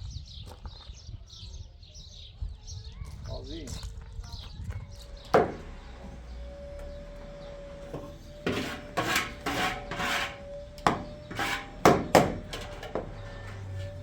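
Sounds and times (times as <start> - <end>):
sharp knocks: 5.3 - 5.8, 10.8 - 13.8
rough scraping strokes: 5.4 - 14.0.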